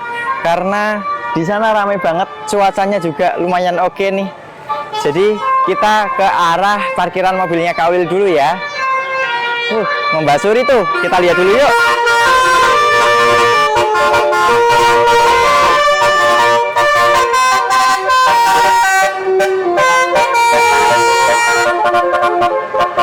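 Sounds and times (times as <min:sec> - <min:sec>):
air horns playing a melody: 0:04.7 - 0:23.0.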